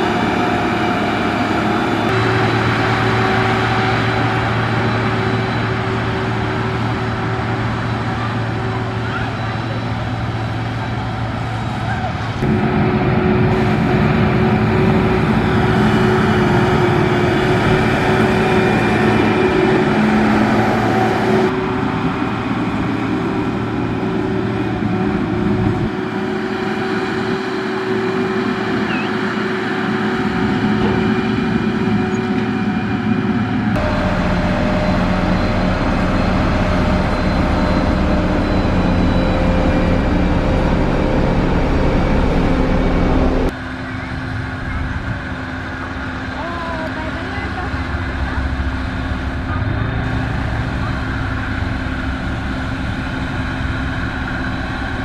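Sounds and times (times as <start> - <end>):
diesel engines under load: 0.0 - 55.0.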